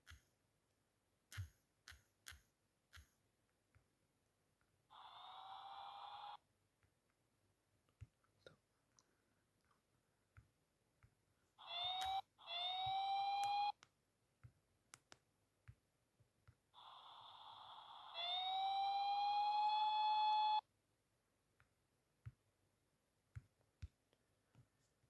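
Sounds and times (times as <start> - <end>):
whining tone: 4.9 - 6.4, 11.6 - 13.8, 16.8 - 20.6.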